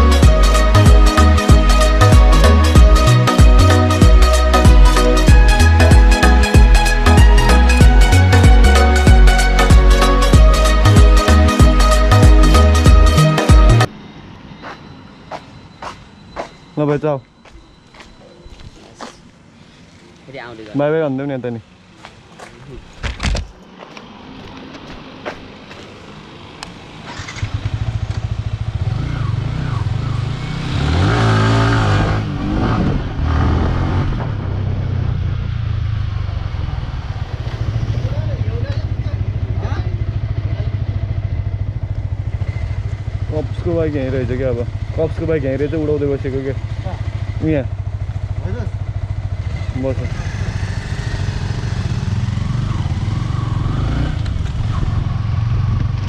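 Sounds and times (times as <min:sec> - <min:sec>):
motorcycle engine starting and revving: 0:25.7 - 0:56.0.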